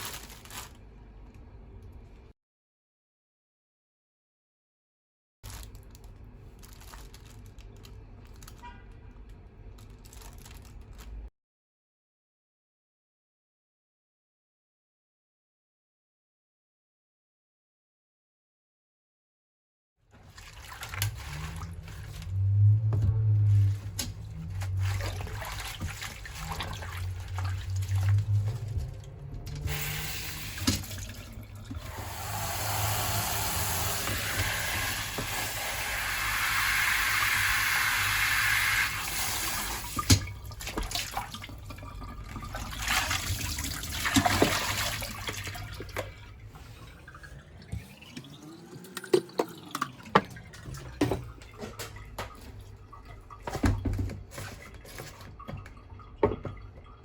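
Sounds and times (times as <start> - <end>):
water running: 20.2 - 57.0.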